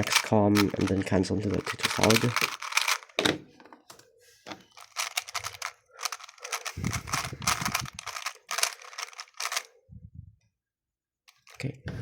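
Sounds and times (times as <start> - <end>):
puzzle cube layers clicking: 1.6 - 3.2, 4.8 - 9.7.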